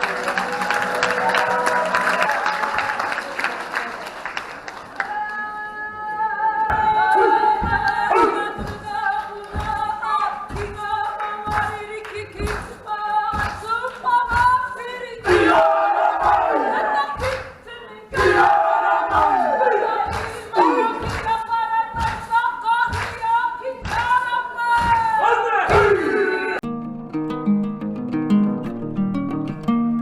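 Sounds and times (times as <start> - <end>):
voices singing held notes: 6.0 - 26.6
regular thumps: 6.7 - 15.4.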